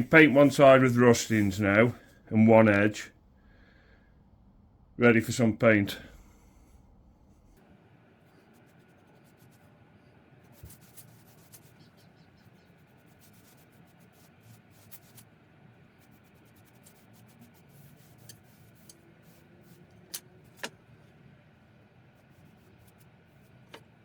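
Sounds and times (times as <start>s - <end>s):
paintbrush rubbing strokes: 8.2s - 9.8s, 10.4s - 20.0s, 21.6s - 24.0s.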